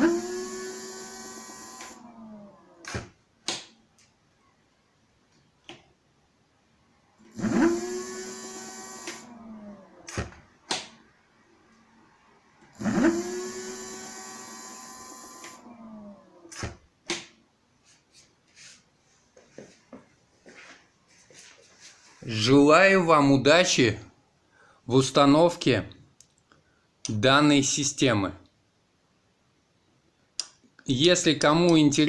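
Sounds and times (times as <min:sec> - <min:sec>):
hub motor whine: 0:00.0 - 0:02.8, 0:07.3 - 0:10.1, 0:12.6 - 0:16.6.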